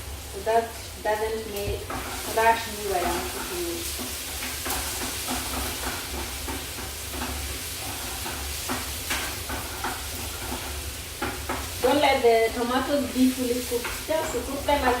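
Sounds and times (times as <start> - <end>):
vegetables sizzling in a frying pan: 0.0 - 15.0
utensil scraping and tapping pan: 1.9 - 11.9.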